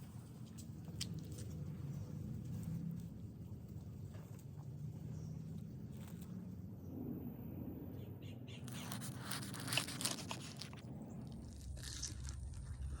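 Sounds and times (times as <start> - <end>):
low steady hum: 0.0 - 13.0
toasted bread crunching: 9.0 - 13.0.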